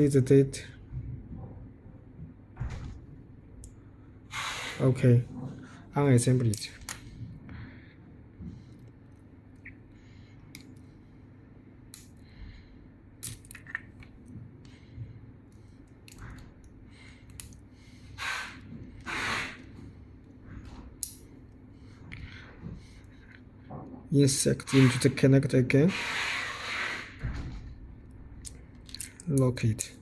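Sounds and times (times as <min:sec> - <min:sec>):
small clicks and handling noises: 0:06.4 - 0:07.1, 0:10.4 - 0:10.9, 0:11.9 - 0:12.3, 0:13.2 - 0:14.8, 0:15.5 - 0:17.7, 0:28.4 - 0:30.0.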